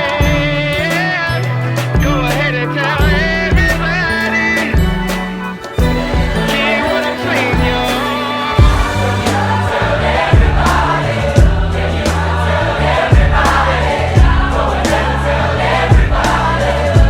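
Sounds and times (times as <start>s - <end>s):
pop song with drum beat: 0.0s - 17.0s
choir-like singing: 5.6s - 17.0s.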